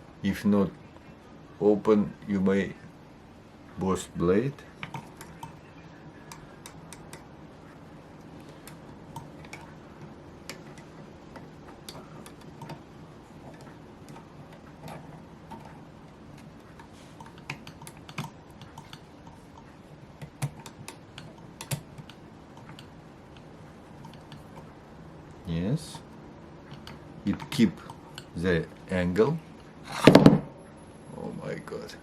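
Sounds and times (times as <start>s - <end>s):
scissors clicking and tapping: 6.3s - 7.3s, 16.4s - 19.0s, 19.6s - 24.4s.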